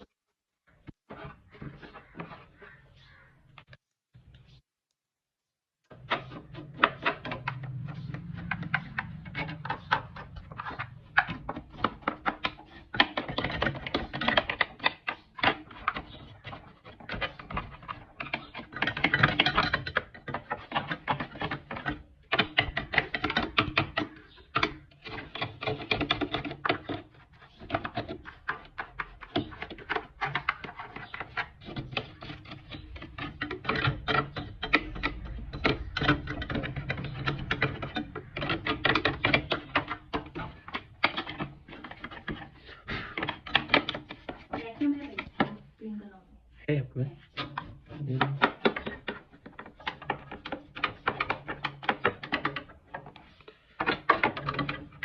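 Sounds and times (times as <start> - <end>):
clicking and tapping by hand: 5.8 - 45.7, 47.2 - 55.0.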